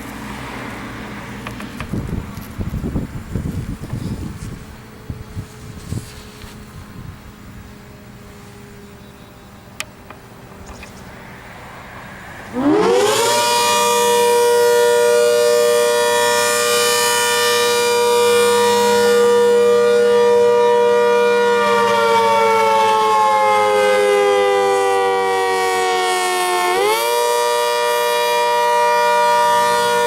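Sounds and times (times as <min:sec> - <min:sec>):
warning siren wailing: 0:04.4 - 0:05.8, 0:12.2 - 0:30.0.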